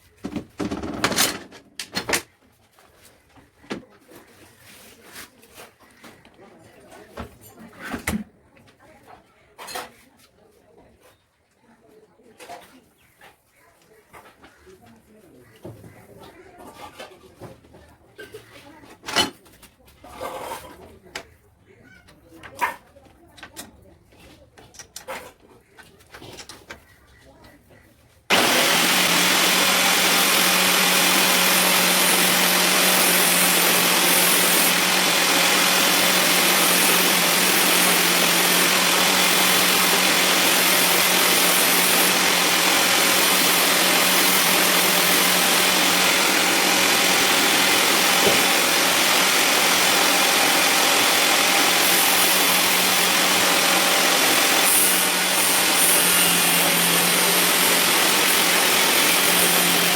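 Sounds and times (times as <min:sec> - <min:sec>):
angle grinder sanding: 0:28.3 - 0:59.9.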